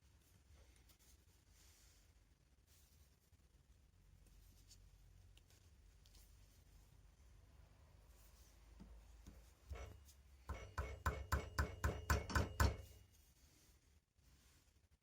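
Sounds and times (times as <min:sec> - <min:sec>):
hammer tapping on steel: 0:09.7 - 0:13.0.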